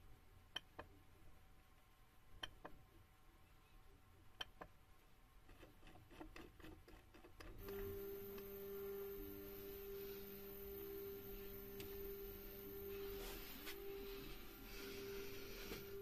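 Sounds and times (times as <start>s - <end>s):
stepper motors whining: 7.6s - 16.0s.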